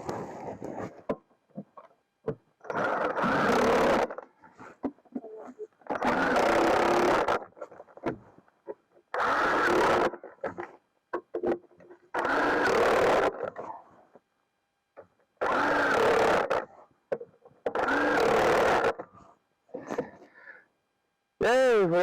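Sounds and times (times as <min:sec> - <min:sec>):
impact wrench bursts: 0:02.8 - 0:04.2, 0:06.0 - 0:07.5, 0:12.2 - 0:13.4, 0:15.4 - 0:16.7, 0:17.8 - 0:19.0
small clicks and knocks: 0:10.4 - 0:12.2, 0:17.1 - 0:17.8.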